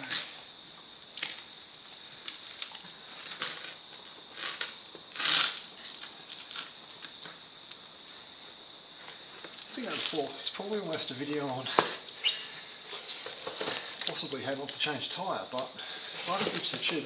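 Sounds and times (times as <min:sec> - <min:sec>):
rubber tube rustling and rubbing: 0:02.3 - 0:07.2.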